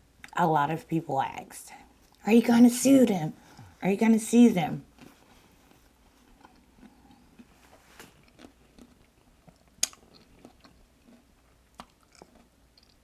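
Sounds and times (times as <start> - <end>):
crunch while chewing: 4.9 - 13.0
person chewing food: 4.9 - 13.0.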